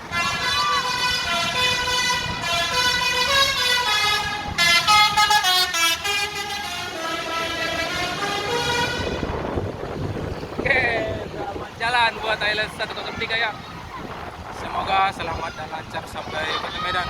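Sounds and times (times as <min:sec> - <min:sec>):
musical air horns playing a tune: 0:00.0 - 0:09.4.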